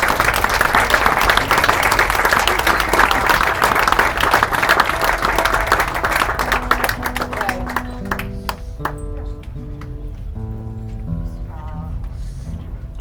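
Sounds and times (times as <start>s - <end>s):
audience applauding: 0.0s - 10.0s.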